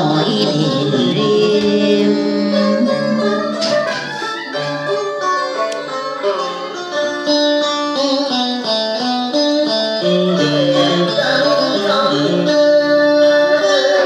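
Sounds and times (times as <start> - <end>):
plucked string instruments melody: 0.0 - 14.0.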